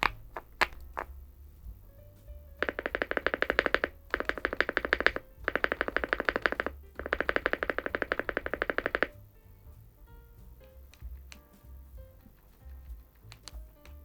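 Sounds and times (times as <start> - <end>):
fast typing on mechanical keyboard: 2.6 - 9.2.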